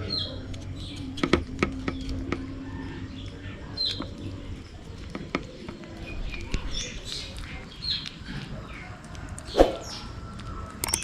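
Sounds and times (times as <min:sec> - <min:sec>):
sharp clicks: 0:09.0 - 0:11.0.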